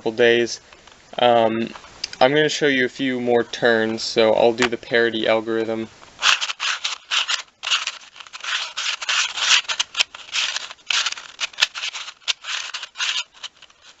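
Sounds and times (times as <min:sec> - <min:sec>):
plastic puzzle cube clacking: 0:06.2 - 0:14.0.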